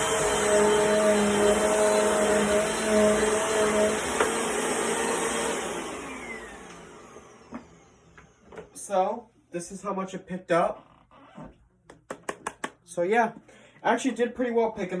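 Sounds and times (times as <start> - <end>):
motor whine spinning down: 0.0 - 8.6
vacuum cleaner running: 0.0 - 9.2.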